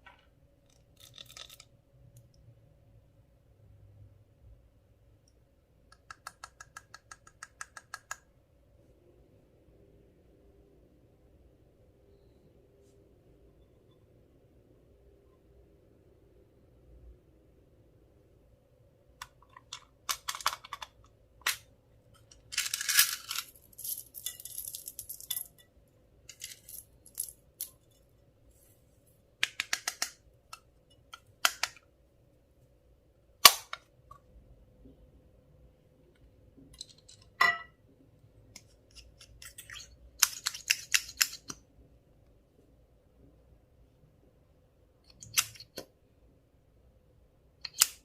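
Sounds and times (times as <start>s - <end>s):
clicks and taps of small items: 29.4s - 31.8s.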